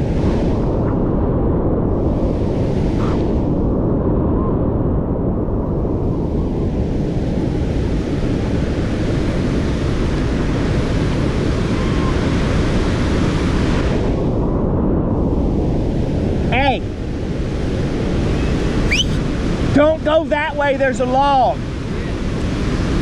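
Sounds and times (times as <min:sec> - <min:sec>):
wind buffeting microphone: 0:00.0 - 0:10.3.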